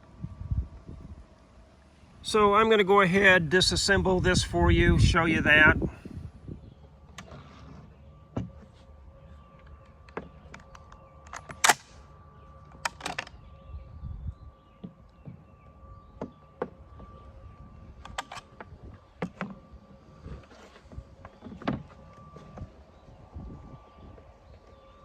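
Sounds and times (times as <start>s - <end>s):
faint steady hum: 0.0s - 25.0s
rifle parts clicking and knocking: 9.6s - 12.0s.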